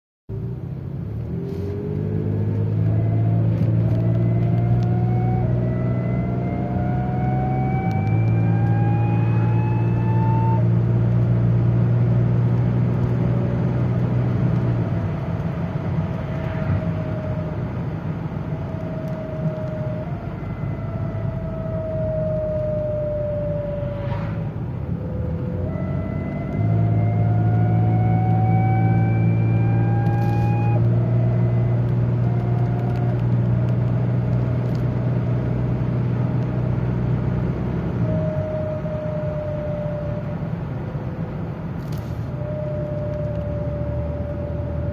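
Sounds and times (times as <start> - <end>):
car engine running under load: 0.3 - 44.9
high whine: 14.6 - 33.8.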